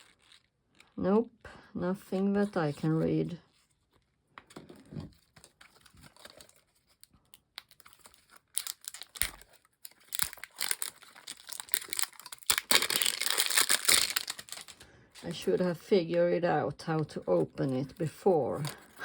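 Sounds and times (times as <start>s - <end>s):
plastic packaging crinkling: 0.0s - 1.0s, 4.5s - 15.4s.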